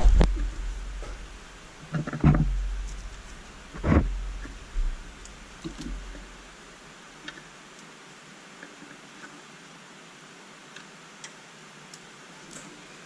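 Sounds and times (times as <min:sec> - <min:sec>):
knocks and clunks of bracket: 0:00.0 - 0:06.3
low rumble: 0:00.0 - 0:06.6.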